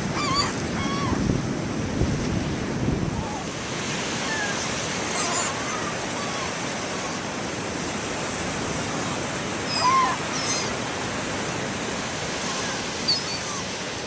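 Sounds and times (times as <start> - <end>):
ocean surf: 0.0 - 14.0
seagull calling: 0.1 - 1.2, 4.2 - 6.7, 9.6 - 11.0, 12.3 - 13.8.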